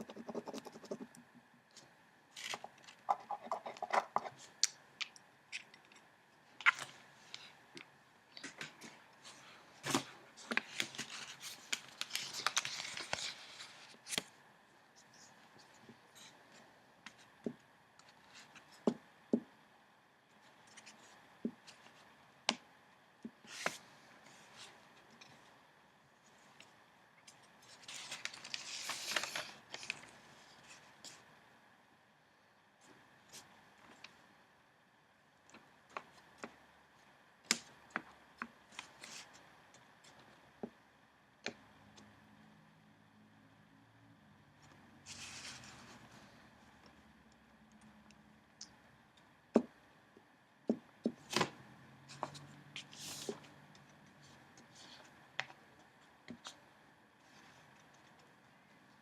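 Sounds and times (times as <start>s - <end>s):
paper rustling: 8.4s - 14.3s, 27.4s - 31.2s.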